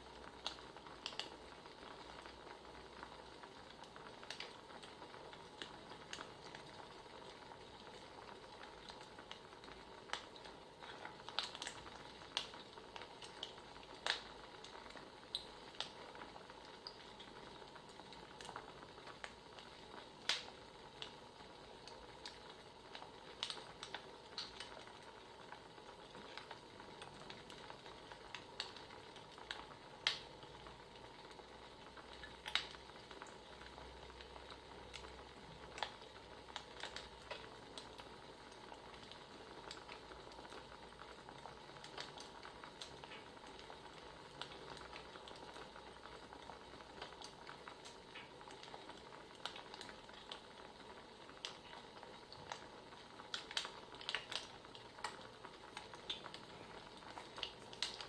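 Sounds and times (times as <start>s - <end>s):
wood fire crackling: 0.0s - 58.0s.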